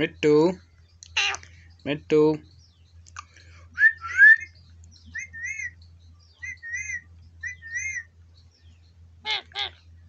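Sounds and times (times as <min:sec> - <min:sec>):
parrot whistling: 0:03.8 - 0:04.5.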